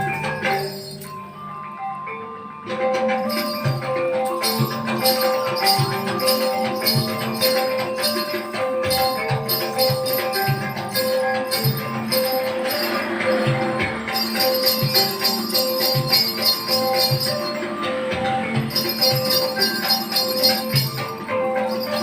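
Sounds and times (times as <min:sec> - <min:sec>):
metallic jingling: 0:00.0 - 0:01.5, 0:03.0 - 0:22.0
metallophone notes: 0:00.0 - 0:22.0.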